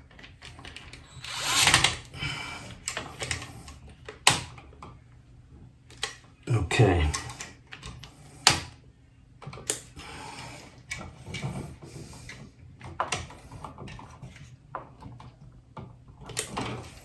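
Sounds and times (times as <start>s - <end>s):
wires rustling: 0.4s - 3.7s.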